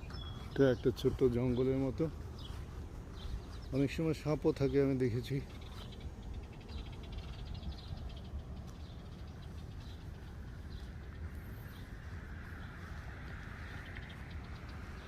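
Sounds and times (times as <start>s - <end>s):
bird trill: 0.0s - 1.7s
songbirds chirping: 0.0s - 15.0s
low steady rumble: 1.1s - 15.0s.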